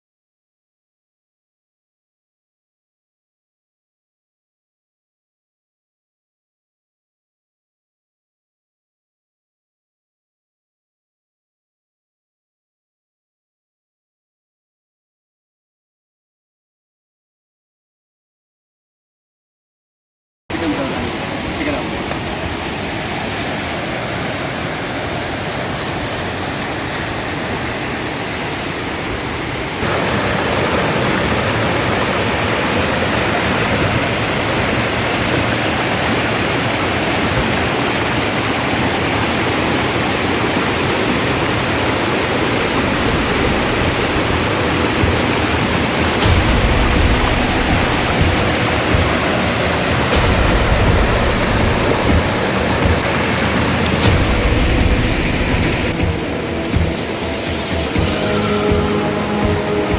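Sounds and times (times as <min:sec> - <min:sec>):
waterfall rushing: 0:20.5 - 0:59.9
deep low rumble: 0:46.2 - 0:53.2, 0:54.1 - 0:57.0.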